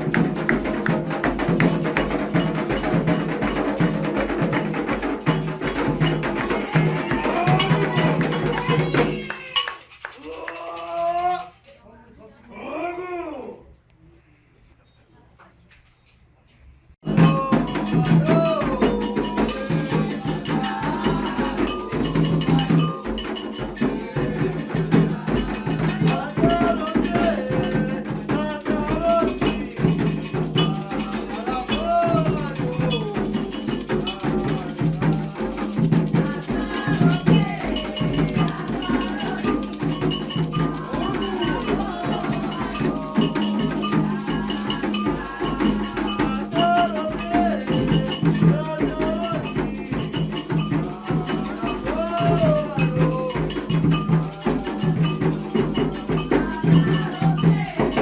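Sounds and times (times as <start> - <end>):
hand drums: 0.0 - 11.5, 17.0 - 58.0
voices singing: 0.0 - 11.6, 17.0 - 58.0
struck metal bell: 17.0 - 27.9, 29.2 - 58.0.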